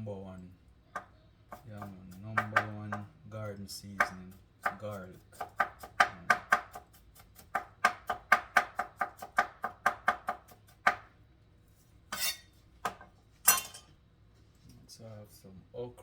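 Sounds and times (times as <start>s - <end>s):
knife chopping on cutting board: 1.0s - 3.1s, 3.9s - 11.1s, 12.1s - 13.1s.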